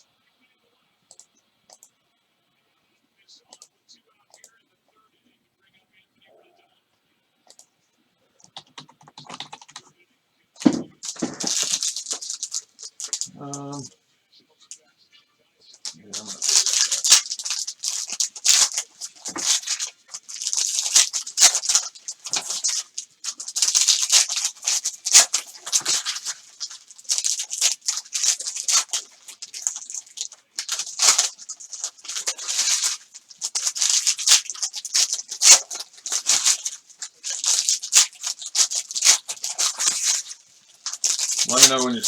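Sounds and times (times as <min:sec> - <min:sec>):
plastic packaging crinkling: 0:10.6 - 0:13.9, 0:15.7 - 0:42.0.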